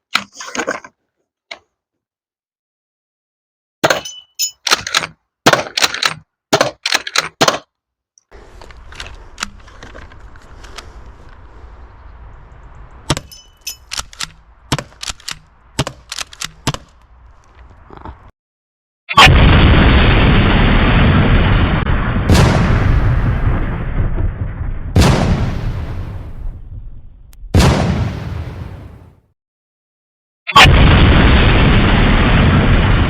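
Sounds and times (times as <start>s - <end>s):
shotgun shots: 27.6s - 29.1s.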